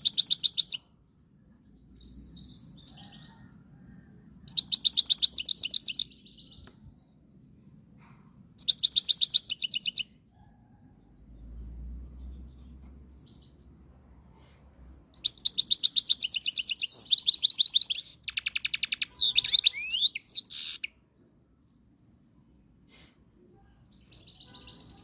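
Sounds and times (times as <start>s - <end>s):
goldfinch singing: 15.2s - 20.9s.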